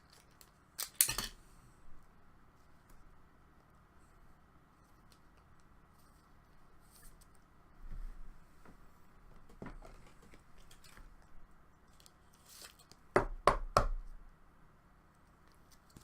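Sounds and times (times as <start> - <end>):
handling cards and packaging: 0.0 - 1.4, 9.7 - 13.1.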